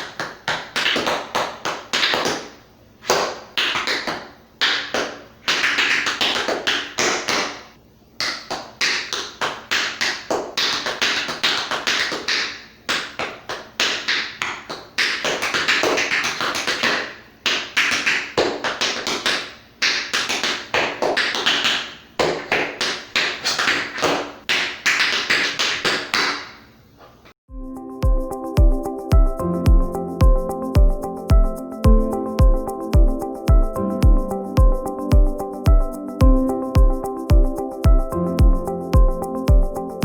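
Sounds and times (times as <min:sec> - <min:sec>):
tap shoes on hard floor: 0:00.0 - 0:07.6, 0:08.2 - 0:26.6
electronic dance music: 0:28.0 - 0:40.0.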